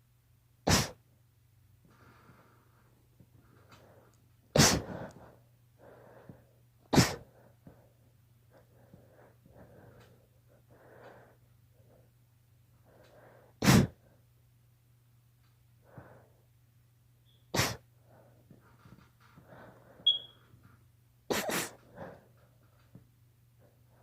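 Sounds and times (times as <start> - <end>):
girl sneezing: 0.7 - 1.0, 4.6 - 4.9, 6.9 - 7.3, 13.6 - 14.0, 17.6 - 17.8, 21.3 - 21.8
quiet breaths: 1.8 - 14.6, 15.3 - 24.0
brief high squeak: 20.0 - 20.4.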